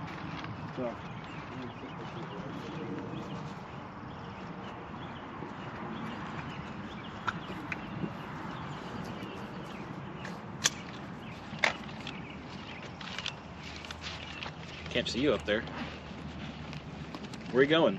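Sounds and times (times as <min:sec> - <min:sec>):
outdoor background noise: 0:00.0 - 0:17.9
sharp cracks: 0:10.6 - 0:12.2.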